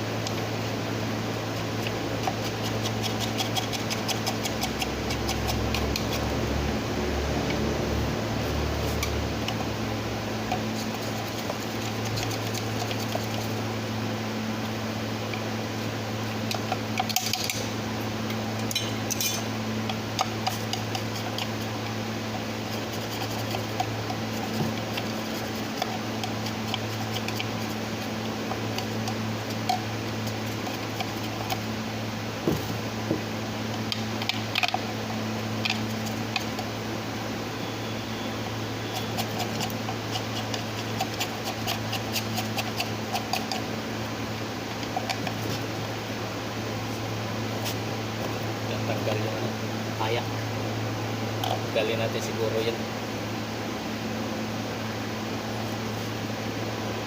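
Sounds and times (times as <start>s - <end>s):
steady low hum: 0.0s - 57.0s
metal tools clinking: 18.7s - 19.5s.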